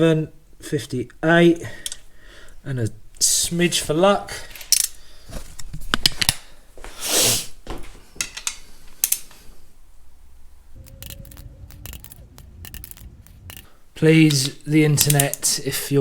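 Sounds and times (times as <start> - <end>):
faint steady hum: 0.0 - 16.0
metal tools clicking: 1.6 - 2.1, 4.5 - 5.0, 8.2 - 9.4, 10.9 - 15.7.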